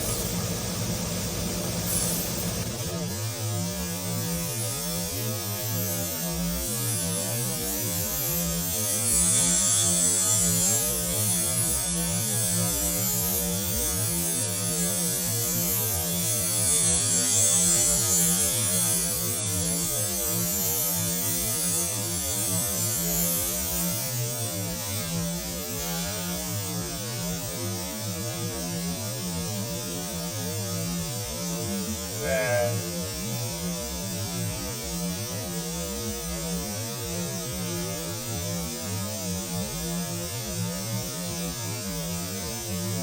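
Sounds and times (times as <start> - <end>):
high hissing sound: 0.0 - 3.0
electric motor hum: 0.0 - 3.1.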